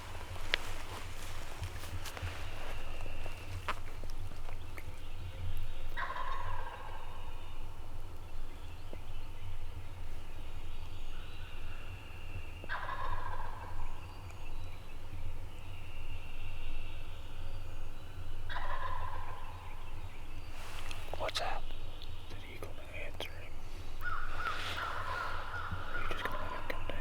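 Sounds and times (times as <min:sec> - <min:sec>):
turkey gobbling: 0:00.0 - 0:05.1, 0:05.8 - 0:07.5, 0:12.7 - 0:14.0, 0:18.5 - 0:20.0, 0:24.0 - 0:27.0.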